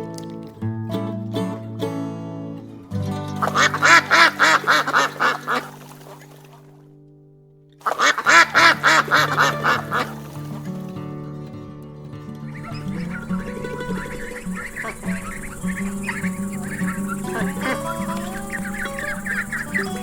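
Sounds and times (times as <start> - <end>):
background music: 0.0 - 6.2, 7.8 - 20.0
duck quacking: 3.4 - 6.4, 7.8 - 10.6, 12.5 - 20.0.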